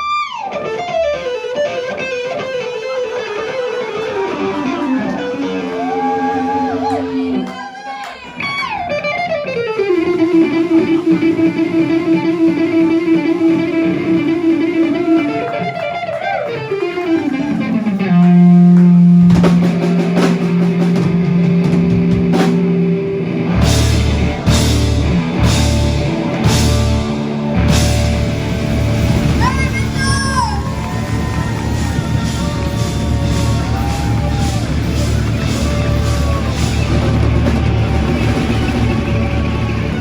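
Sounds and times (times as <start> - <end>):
sliding electric guitar notes: 0.0 - 7.5, 8.4 - 40.0
drums: 0.0 - 40.0
band hitting heavy chords: 16.6 - 40.0.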